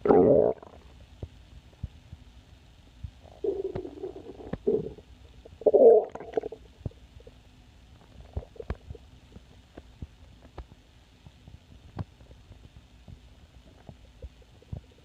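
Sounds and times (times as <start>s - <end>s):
stomach growling: 0.0s - 1.0s, 3.2s - 7.4s, 8.0s - 9.8s, 13.5s - 15.0s
stomach gurgles and pops: 0.0s - 2.0s, 3.0s - 15.0s.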